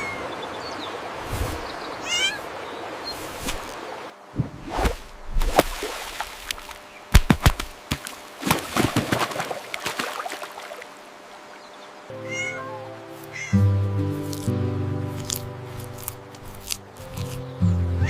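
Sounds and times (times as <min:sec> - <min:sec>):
cat meowing: 0:02.0 - 0:02.5, 0:12.2 - 0:13.6
background music: 0:12.1 - 0:18.0.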